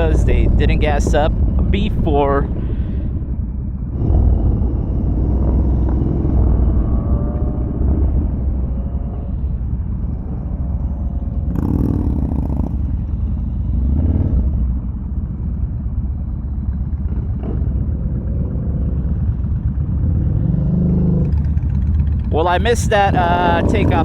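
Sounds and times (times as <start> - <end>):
motorcycle engines low rumble: 0.0 - 24.0.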